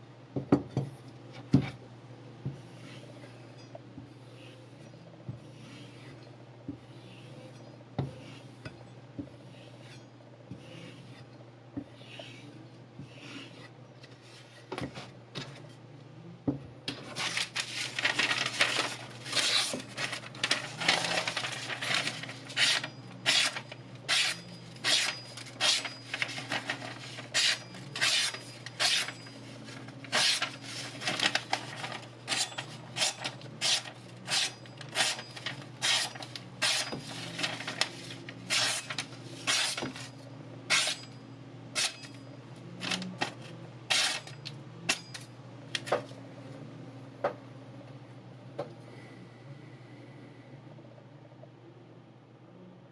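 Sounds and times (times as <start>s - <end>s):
knife scraping on sandpaper: 12.0s - 14.7s, 18.8s - 40.1s, 41.8s - 42.1s, 43.9s - 44.4s.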